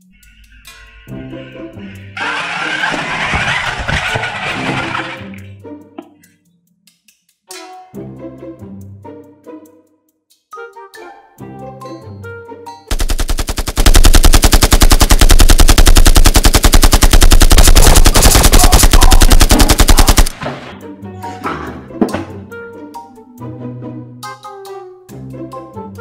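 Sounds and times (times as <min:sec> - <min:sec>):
background music: 0:00.0 - 0:03.1, 0:04.6 - 0:12.9, 0:20.3 - 0:26.0
machine-gun automatic fire: 0:02.2 - 0:05.2, 0:12.9 - 0:20.4.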